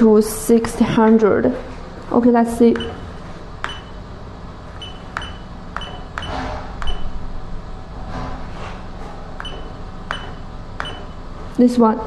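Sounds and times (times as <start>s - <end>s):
steady low hum: 0.0s - 12.0s
button clicks with short beeps: 2.8s - 3.0s.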